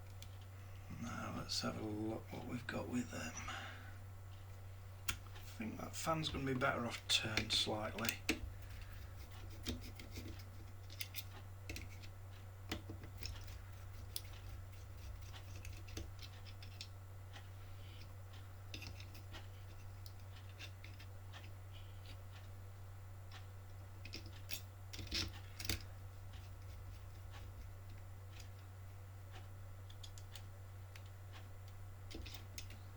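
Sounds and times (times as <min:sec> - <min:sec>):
steady low hum: 0:00.0 - 0:32.9
hands handling wires and plastic parts: 0:06.4 - 0:12.1, 0:24.0 - 0:28.6.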